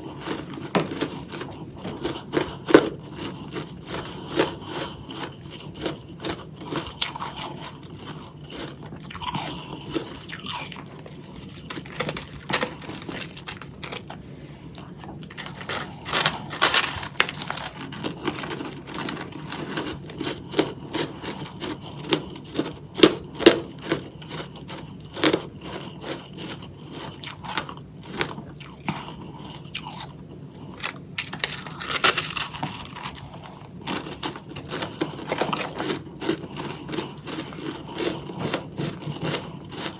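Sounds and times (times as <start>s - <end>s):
chewing crunchy frost: 0.0s - 39.9s.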